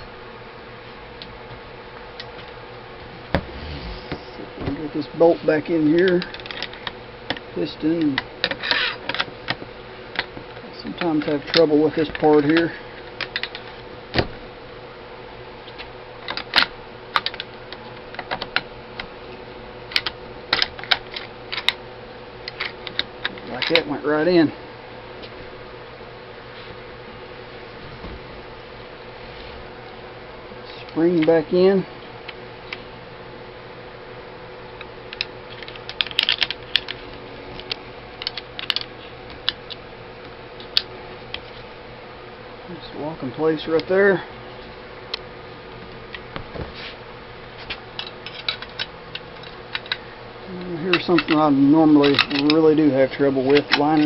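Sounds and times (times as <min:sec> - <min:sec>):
faint steady hum: 0:00.0 - 0:54.0
metal gun parts clicking: 0:52.0 - 0:52.6.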